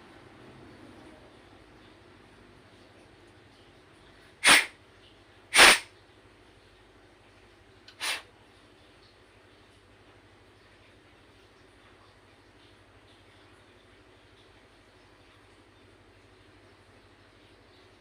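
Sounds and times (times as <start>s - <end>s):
hissing air blasts: 4.4s - 4.7s, 5.5s - 5.9s, 8.0s - 8.2s.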